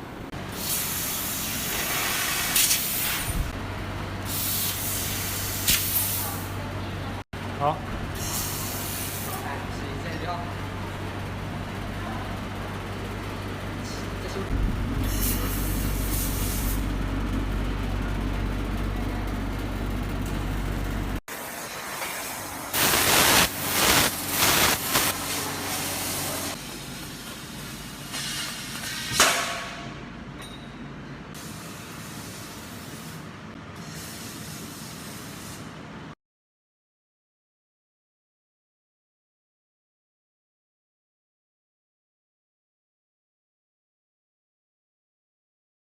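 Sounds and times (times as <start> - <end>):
welding machine humming: 8.2 - 9.8, 10.6 - 29.0
loud hissing bursts: 22.2 - 26.6.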